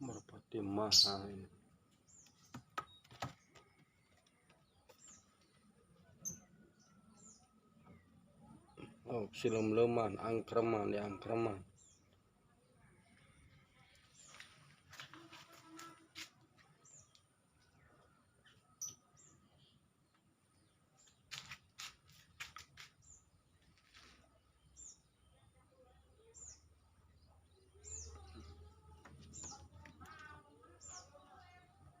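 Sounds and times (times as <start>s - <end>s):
faint bird chirps: 0.0s - 9.2s, 16.8s - 21.2s.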